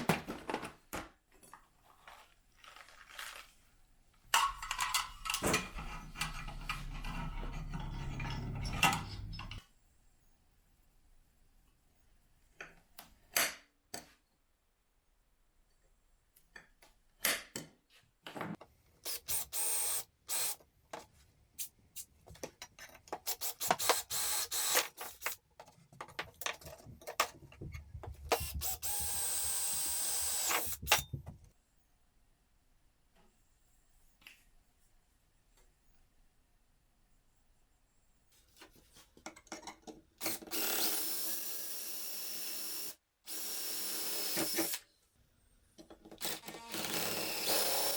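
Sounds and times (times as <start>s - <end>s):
tools clattering: 4.3s - 9.6s
handheld power tool running: 23.3s - 25.4s, 28.2s - 31.0s, 40.2s - 44.8s, 46.2s - 47.9s.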